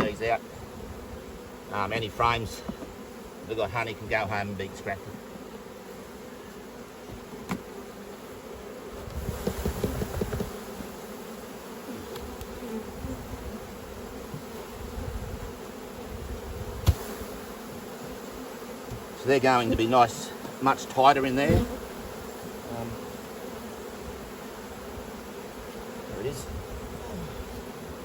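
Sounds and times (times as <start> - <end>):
honeybees buzzing: 0.0 - 28.0
hive frames knocking: 7.0 - 7.8, 9.1 - 11.0, 16.8 - 18.2, 18.8 - 22.6.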